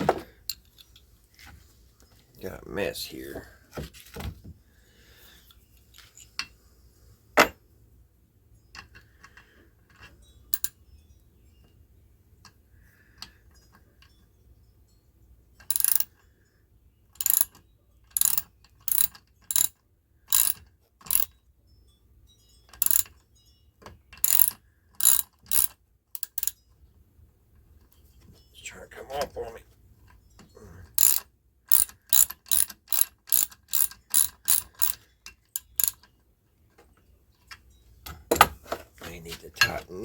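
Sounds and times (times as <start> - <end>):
small metal clinks: 0.4 - 1.1, 5.5 - 6.6, 8.6 - 11.8, 12.4 - 26.9, 30.0 - 38.7
ratchet wrench clicking: 15.6 - 16.1, 17.2 - 19.7, 20.3 - 21.3, 22.8 - 23.1, 24.2 - 26.6, 31.0 - 36.1.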